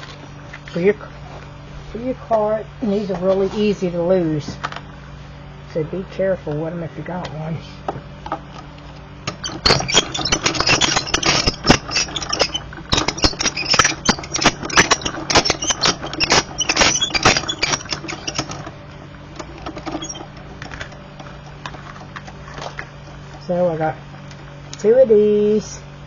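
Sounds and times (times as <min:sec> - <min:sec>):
faint steady hum: 0:00.0 - 0:26.0
die-cutting machine crackling and clicking: 0:09.2 - 0:23.4.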